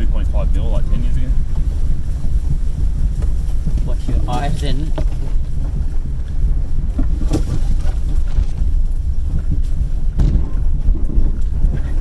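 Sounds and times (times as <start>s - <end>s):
vehicle rumbling over dirt track: 0.0s - 12.0s.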